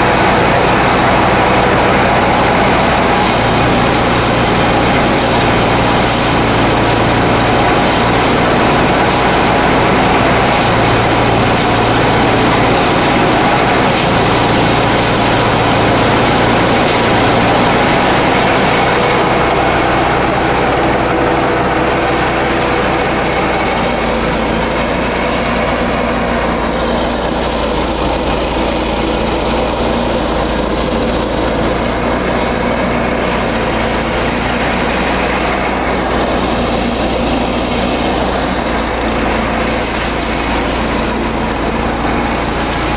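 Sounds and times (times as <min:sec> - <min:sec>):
pulsing hiss: 0:00.0 - 0:29.2
rice thresher engine running: 0:00.0 - 0:42.9.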